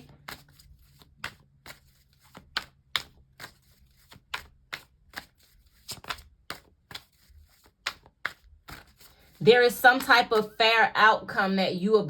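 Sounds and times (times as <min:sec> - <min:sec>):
cards being shuffled: 0:00.0 - 0:10.6.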